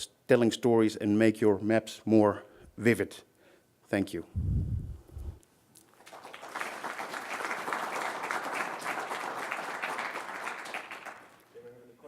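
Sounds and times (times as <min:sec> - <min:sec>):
audience applauding: 0:05.9 - 0:11.5.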